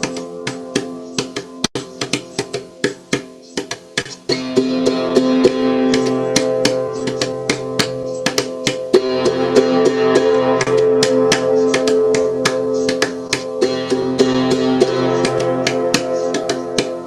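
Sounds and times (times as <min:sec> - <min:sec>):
percussive clicks: 0:00.0 - 0:04.4, 0:05.4 - 0:09.0, 0:10.4 - 0:17.0
kalimba melody: 0:04.3 - 0:17.0.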